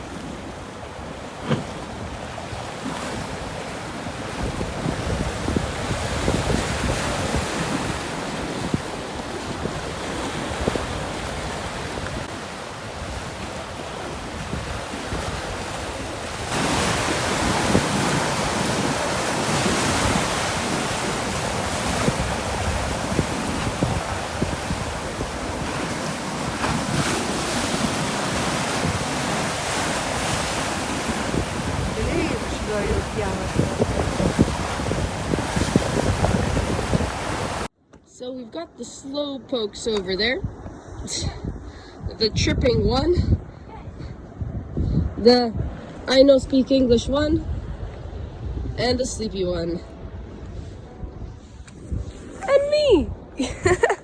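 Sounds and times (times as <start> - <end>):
surf washing against rocks: 0.0 - 37.7
wind buffeting microphone: 0.0 - 37.7, 39.7 - 54.0.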